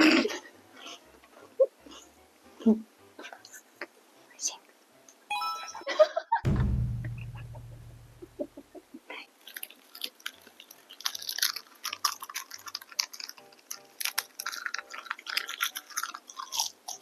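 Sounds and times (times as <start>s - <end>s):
chewing and crunching food: 0.0s - 3.9s, 9.1s - 17.0s
low hum: 6.5s - 8.6s.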